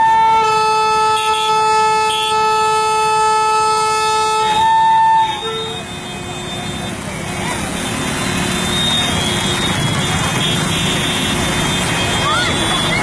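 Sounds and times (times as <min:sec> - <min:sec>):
vehicle horn blast: 0:00.0 - 0:06.5.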